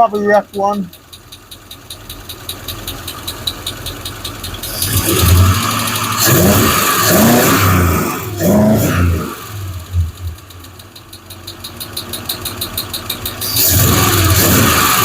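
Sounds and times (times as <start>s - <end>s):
car engine idling: 0.0s - 15.0s
engine revving: 0.0s - 15.0s
valvetrain ticking: 0.0s - 15.0s.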